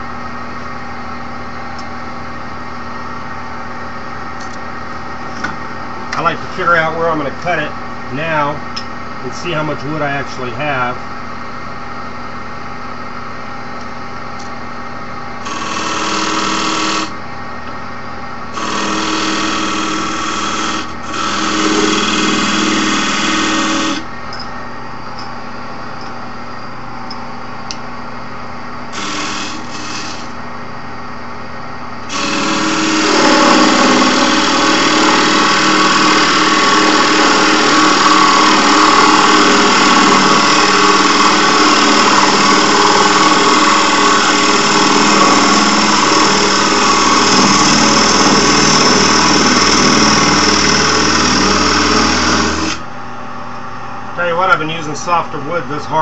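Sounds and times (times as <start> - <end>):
turning tool cutting wood: 15.4 - 17.2, 18.5 - 24.1, 29.0 - 30.4, 32.1 - 52.8
wood lathe motor running: 15.4 - 17.2, 18.5 - 24.1, 28.9 - 30.4, 32.1 - 52.9.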